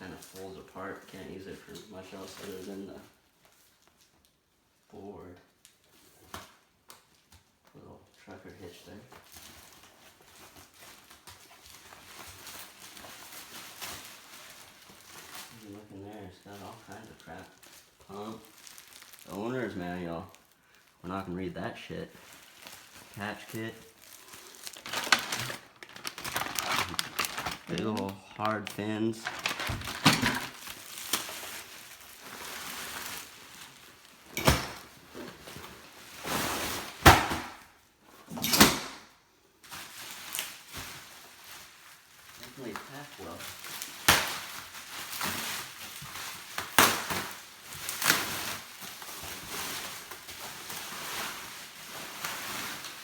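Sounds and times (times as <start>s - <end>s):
plastic wrapping rustling: 0.0s - 4.9s, 5.5s - 53.0s
bag rustling and scraping: 22.1s - 37.0s.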